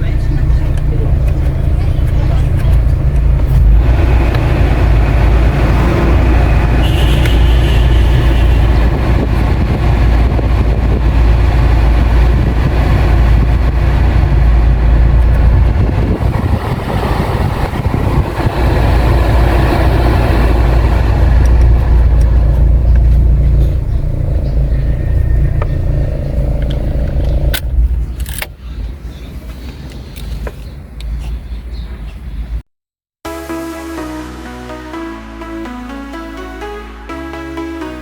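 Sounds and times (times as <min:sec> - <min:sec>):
car engine running: 0:00.0 - 0:28.4.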